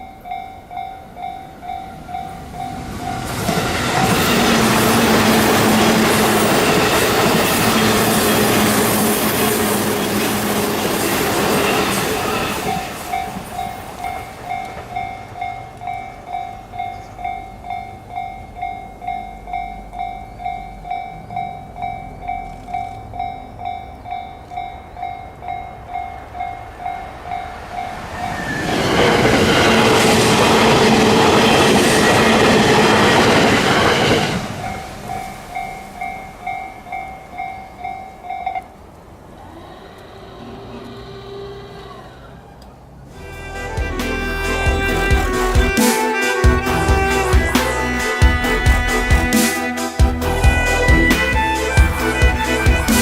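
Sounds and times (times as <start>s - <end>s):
railroad crossing bell ringing: 0.0s - 38.8s
electric train passing: 0.0s - 53.0s.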